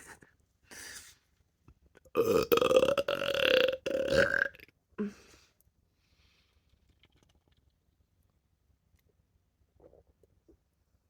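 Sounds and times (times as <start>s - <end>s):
long belch: 2.1s - 4.6s.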